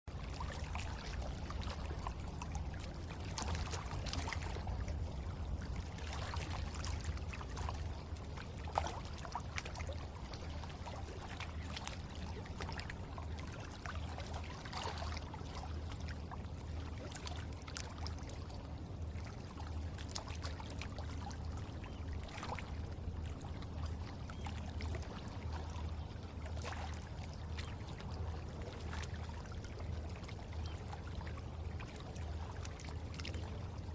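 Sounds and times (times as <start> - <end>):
small splashes and gurgles: 0.2 - 33.9.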